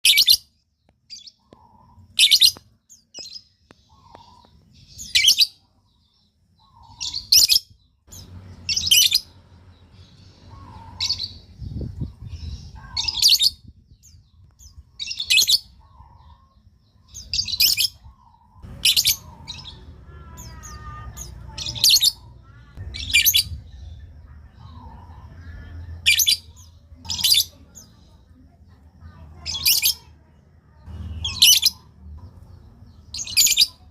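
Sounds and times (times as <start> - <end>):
lovebird chirping: 0.0 - 33.9
faint low rumble: 15.7 - 29.6.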